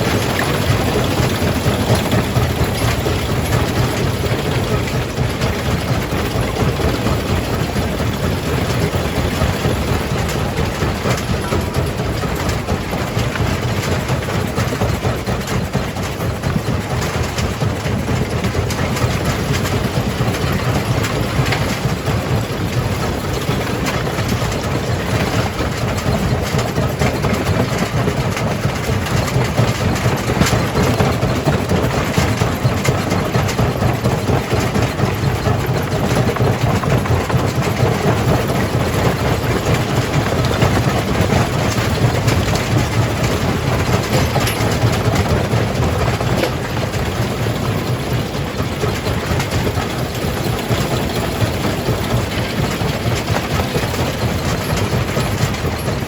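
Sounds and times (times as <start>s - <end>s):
heavy engine drone: 0.0s - 14.9s.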